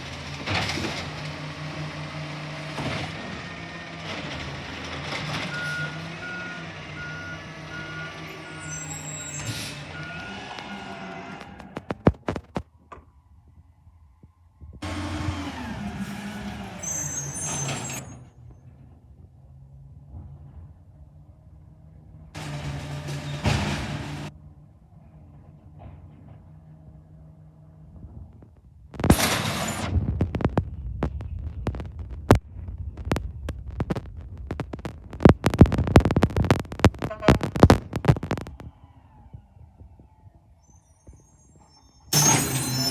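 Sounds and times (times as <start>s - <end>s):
garbage truck engine and machinery: 0.0s - 42.9s
high squeal: 7.8s - 11.7s, 15.3s - 18.4s, 38.2s - 42.9s.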